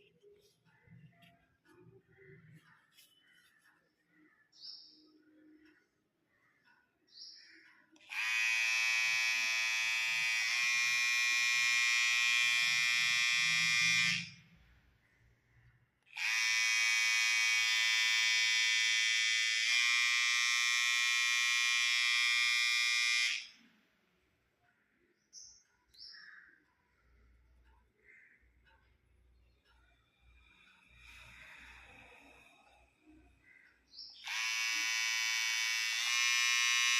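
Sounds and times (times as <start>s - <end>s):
electric hair trimmer buzzing: 8.0s - 14.5s, 16.1s - 23.7s, 30.8s - 32.7s, 34.2s - 36.9s.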